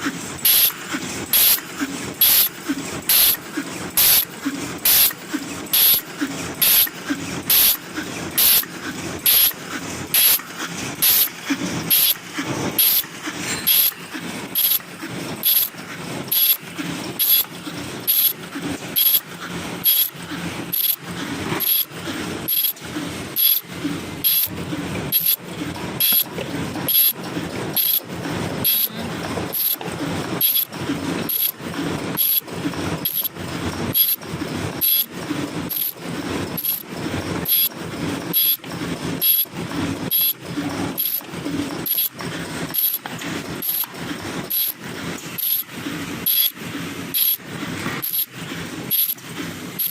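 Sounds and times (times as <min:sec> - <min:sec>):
machine mechanical rattle: 0:00.0 - 0:49.9
machine high hiss: 0:02.2 - 0:02.5, 0:03.1 - 0:03.4, 0:08.4 - 0:10.4, 0:11.0 - 0:11.3, 0:11.9 - 0:12.2, 0:12.8 - 0:14.8, 0:15.4 - 0:15.7, 0:16.3 - 0:16.6, 0:17.2 - 0:17.4, 0:18.0 - 0:18.4, 0:19.0 - 0:19.2, 0:19.8 - 0:20.1, 0:22.5 - 0:22.8, 0:24.2 - 0:24.5.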